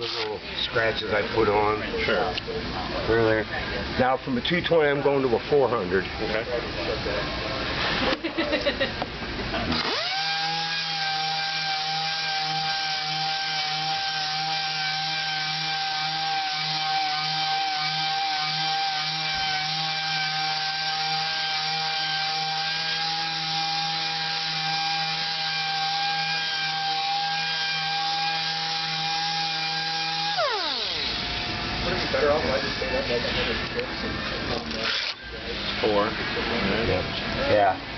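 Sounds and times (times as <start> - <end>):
orbital sander whining: 0.0 - 0.4, 9.7 - 33.1.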